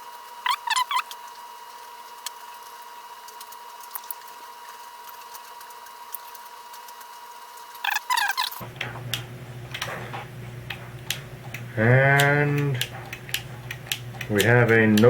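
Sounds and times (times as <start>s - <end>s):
quick chirps: 0.4s - 1.2s, 7.8s - 8.6s.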